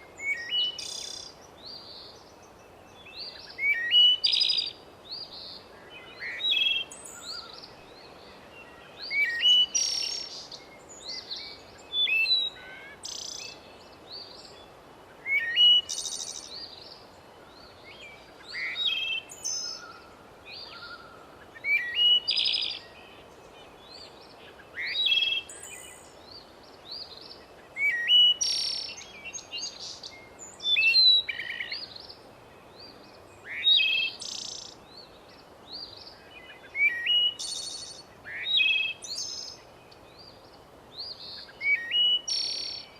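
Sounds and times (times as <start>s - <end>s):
faint background hiss: 0.0s - 42.9s
songbirds chirping and trilling: 0.0s - 42.9s.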